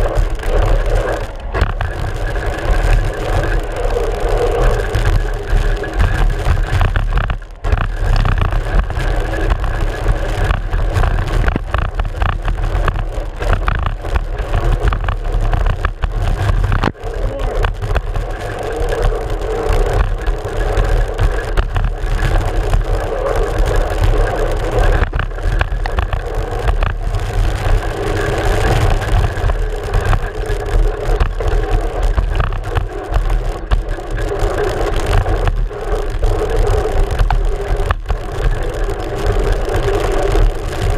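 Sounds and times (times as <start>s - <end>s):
bike fork rattling and knocks: 0.0s - 40.9s
wind rush: 0.0s - 40.9s.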